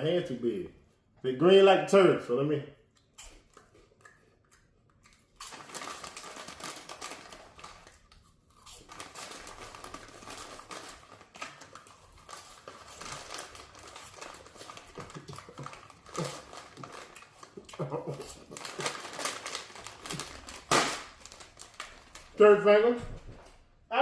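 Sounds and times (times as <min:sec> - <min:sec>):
snack bag crinkling: 0:03.2 - 0:22.4.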